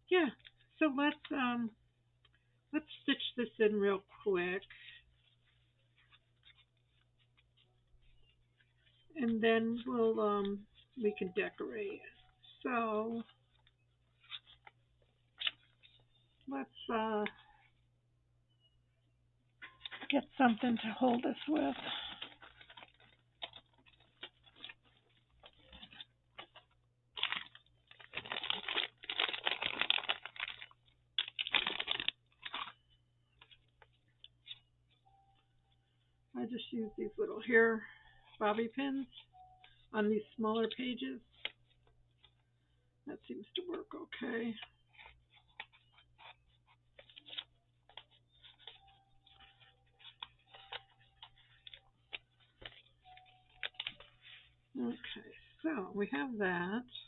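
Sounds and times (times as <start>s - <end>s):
paper rustling: 4.7s - 11.1s, 12.1s - 16.4s, 19.6s - 35.0s, 40.6s - 42.5s, 43.6s - 54.6s.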